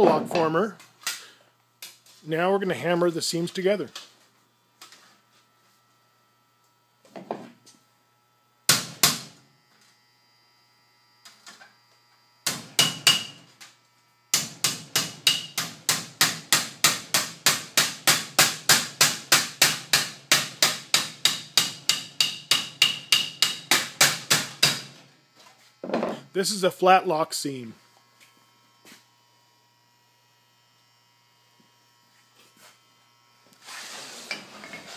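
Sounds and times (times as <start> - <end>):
hammer striking sheet metal: 8.7 - 9.4, 12.5 - 13.5, 14.3 - 25.0.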